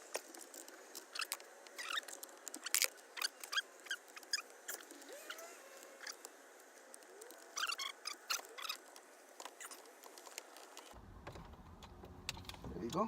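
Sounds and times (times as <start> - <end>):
small clicks and scratches: 0.0 - 12.7
plastic squeaks: 0.5 - 6.3, 6.9 - 11.0.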